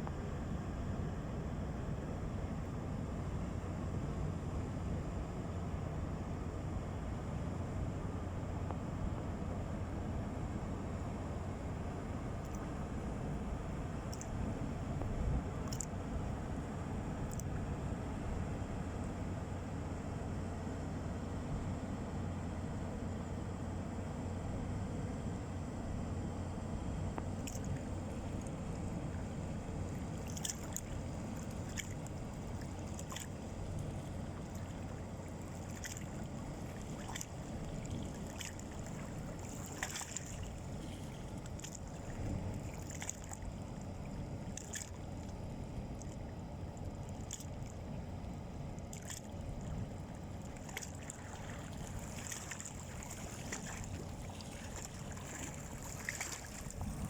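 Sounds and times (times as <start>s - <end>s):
ship engine rumble: 26.5s - 57.0s.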